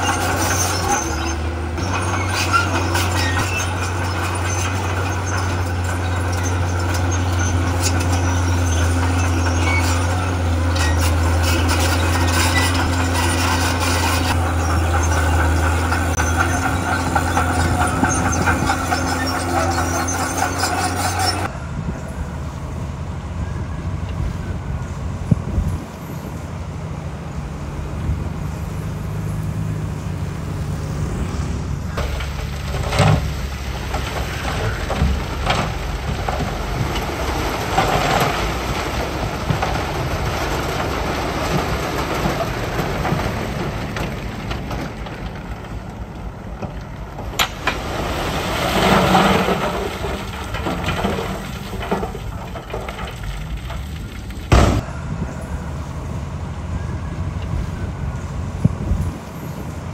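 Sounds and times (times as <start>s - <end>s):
coarse grinding noise: 0.0s - 21.5s
diesel machinery engine rumble: 0.0s - 59.9s.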